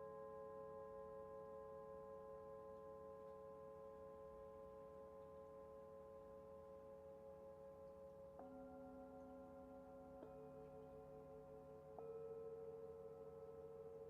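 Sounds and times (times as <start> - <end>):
singing bowl ringing: 8.4 - 14.0.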